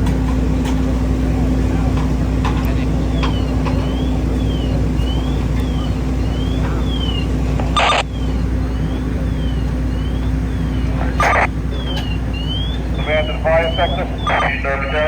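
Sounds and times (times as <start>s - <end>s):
fire engines rumbling: 0.0s - 15.0s
faint siren wailing: 2.8s - 15.0s
radio static burst: 7.6s - 8.1s, 11.1s - 11.5s, 13.0s - 15.0s.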